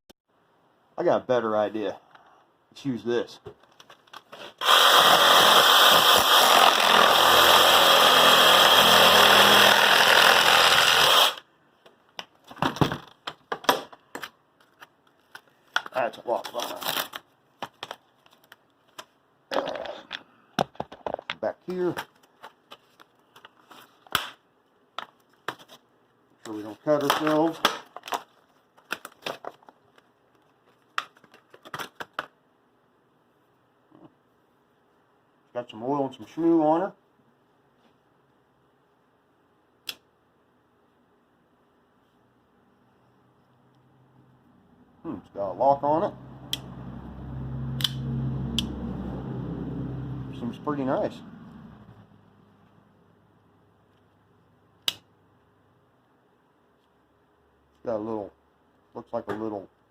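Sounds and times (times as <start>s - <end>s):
power tool running: 4.6s - 11.4s.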